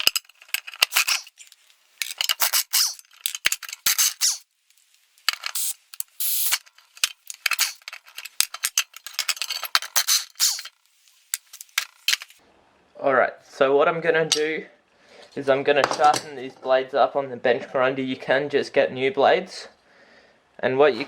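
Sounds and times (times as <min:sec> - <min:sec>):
impact wrench rattling: 0:00.0 - 0:01.4, 0:02.0 - 0:04.4, 0:05.3 - 0:10.7.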